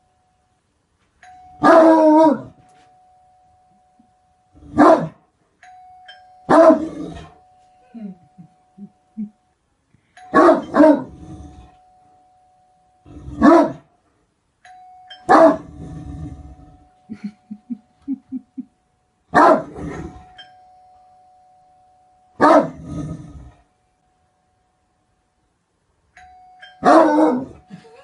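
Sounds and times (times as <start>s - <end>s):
faint steady tone: 0.0s - 19.4s, 20.0s - 28.0s
dog barking deeply: 13.4s - 13.8s, 19.4s - 19.9s, 22.4s - 22.8s, 26.9s - 27.5s.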